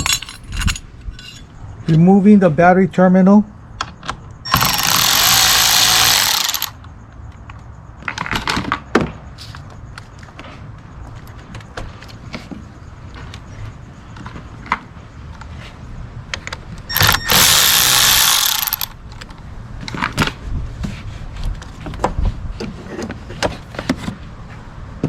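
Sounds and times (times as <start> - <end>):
ratchet and socket clicking: 4.5 - 6.7, 16.9 - 19.4.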